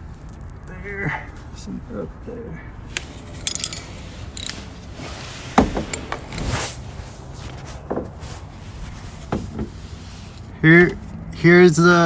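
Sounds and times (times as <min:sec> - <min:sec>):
dull knocks and bumps: 0:05.6 - 0:06.3, 0:07.5 - 0:08.2, 0:09.2 - 0:09.8.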